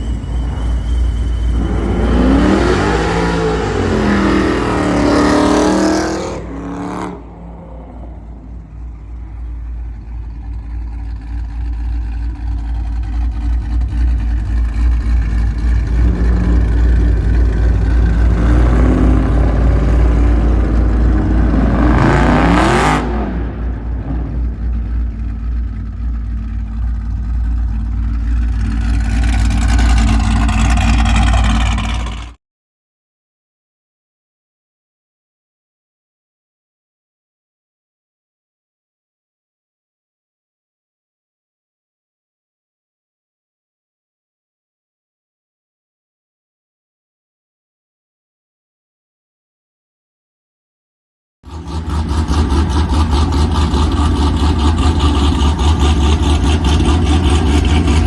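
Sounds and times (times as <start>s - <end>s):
car exhaust revving: 0.0s - 32.4s, 51.5s - 58.0s.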